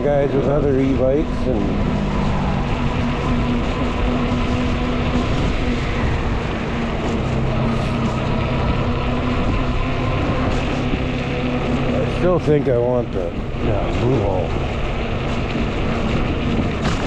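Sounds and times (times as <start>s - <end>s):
electric motor hum: 0.0s - 17.0s
wind and tire noise: 0.0s - 17.0s.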